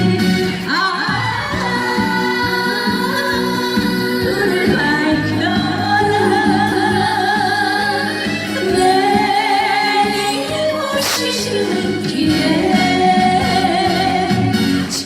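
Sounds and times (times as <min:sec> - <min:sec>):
person singing with vibrato: 0:00.0 - 0:15.0.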